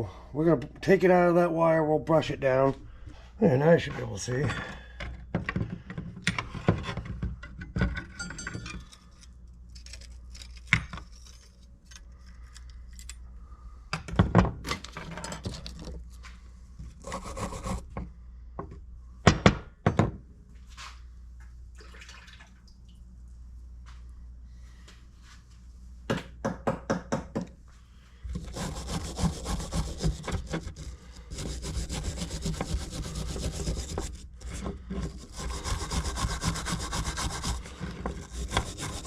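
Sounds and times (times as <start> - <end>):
scratchy brushing: 28.3 - 39.0.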